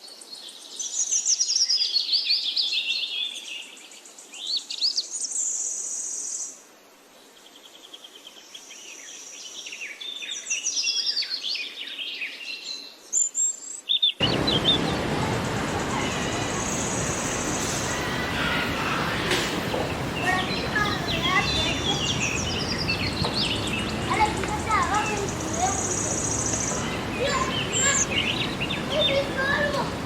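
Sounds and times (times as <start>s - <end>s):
songbirds singing and chirping: 7.4s - 30.0s
loud rushing noise: 14.2s - 30.0s.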